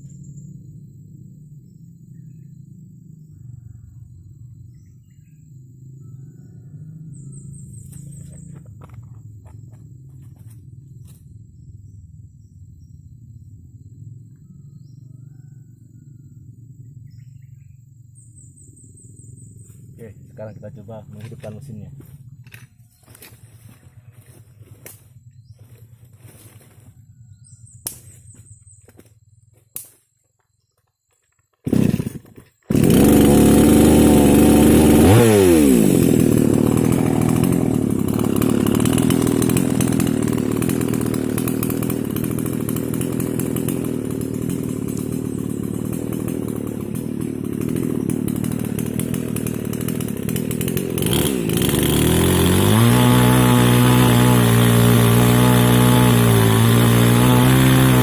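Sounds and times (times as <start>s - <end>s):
mini chainsaw engine running: 7.1s - 11.2s, 19.6s - 26.9s, 31.6s - 58.0s.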